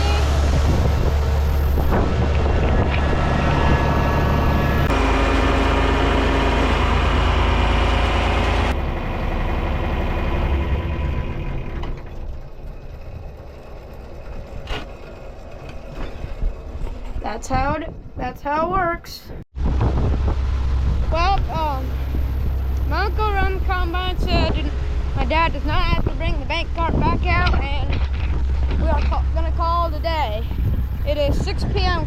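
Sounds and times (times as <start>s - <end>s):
grain-handling machinery: 0.0s - 10.3s
diesel engine running: 0.0s - 18.2s, 19.6s - 32.0s.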